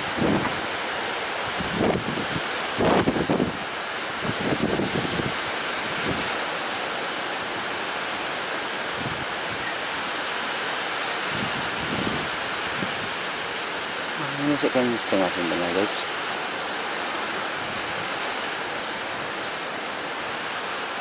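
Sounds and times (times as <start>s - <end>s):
strong wind on microphone: 0.0s - 6.4s, 8.9s - 10.0s, 11.2s - 13.3s
sea waves: 0.0s - 21.0s.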